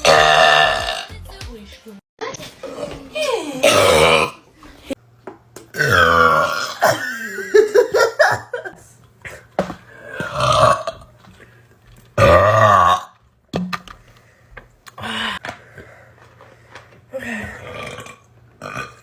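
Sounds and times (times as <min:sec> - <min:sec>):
woman burping: 0:00.0 - 0:01.1, 0:02.6 - 0:04.5, 0:05.7 - 0:07.7, 0:10.0 - 0:11.1, 0:12.2 - 0:13.2, 0:17.2 - 0:19.0.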